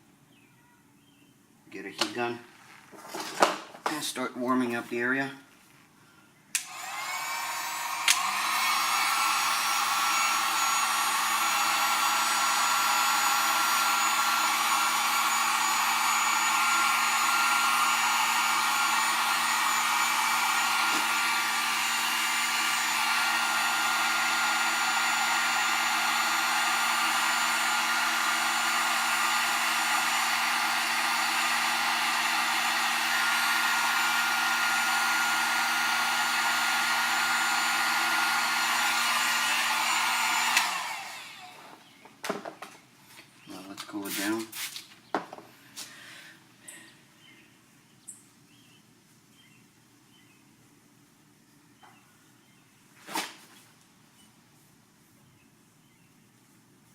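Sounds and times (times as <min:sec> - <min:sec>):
heat gun fan humming: 0:06.5 - 0:47.4.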